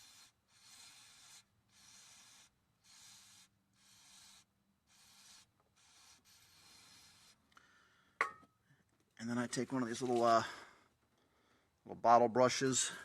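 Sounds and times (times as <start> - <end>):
aerosol can spraying: 0.0 - 7.4.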